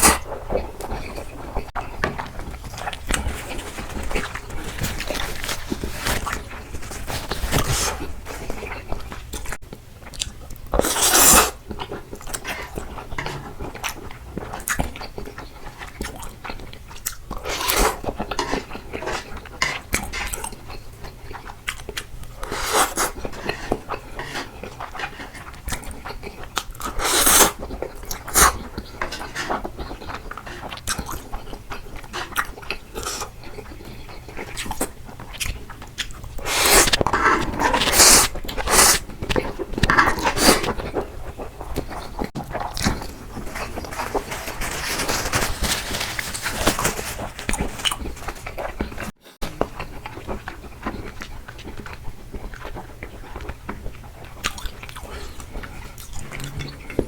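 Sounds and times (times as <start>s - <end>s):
person chewing food: 0.0s - 57.0s
louder chewing bursts: 21.4s - 57.0s.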